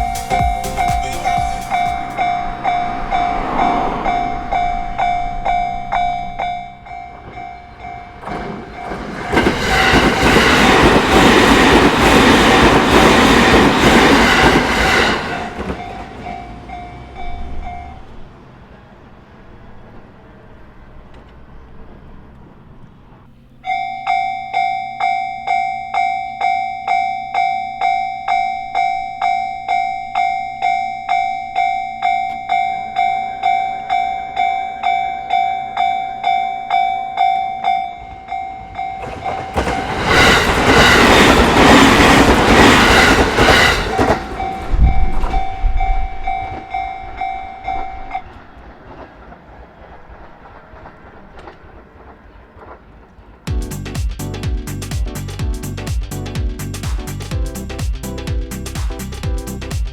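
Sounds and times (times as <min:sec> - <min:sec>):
level crossing warning bell: 0:00.0 - 0:11.8, 0:12.6 - 0:18.4, 0:23.6 - 0:48.6
train rumble and wheel clatter: 0:00.0 - 0:53.8.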